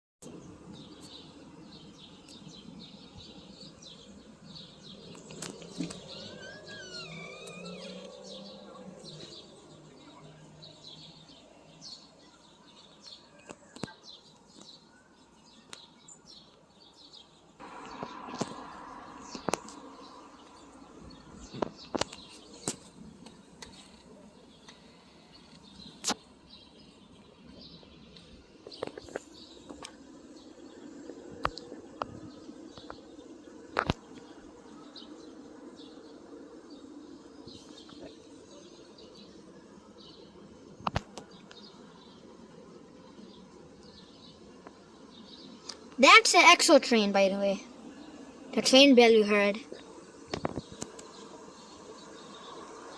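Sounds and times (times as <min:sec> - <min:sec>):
bird chirping: 0:00.2 - 0:52.9.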